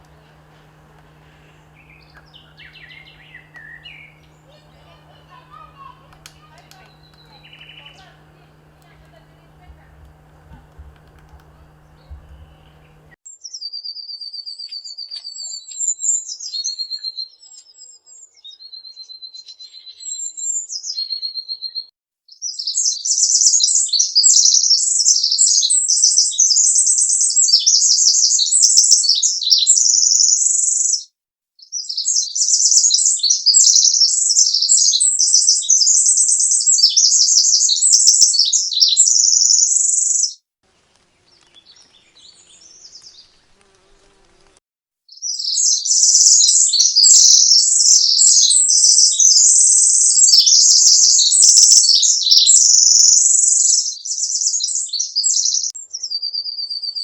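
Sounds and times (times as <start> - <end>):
small bird trilling: 1.7 - 4.8, 5.6 - 8.2, 18.7 - 31.0, 31.6 - 40.4, 45.1 - 57.0
short whistled bird notes: 1.8 - 4.4.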